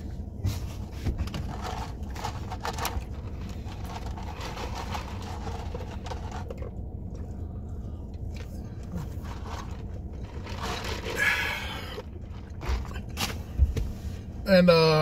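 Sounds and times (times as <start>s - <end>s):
steady low hum: 0.0s - 15.0s
food wrapping rustling: 0.6s - 6.6s, 8.9s - 13.1s.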